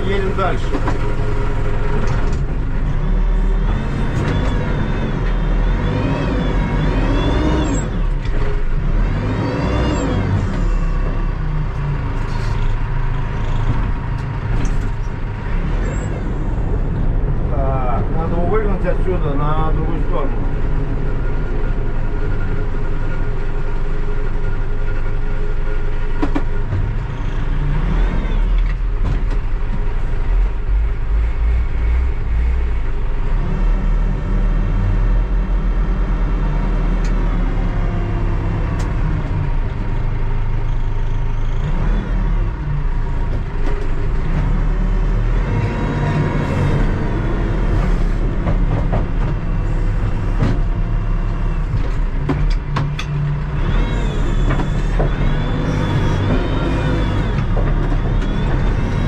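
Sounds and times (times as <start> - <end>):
backhoe diesel engine running: 0.0 - 59.0
sharp clicks and knocks: 0.6 - 1.3, 26.2 - 27.0, 51.7 - 55.6.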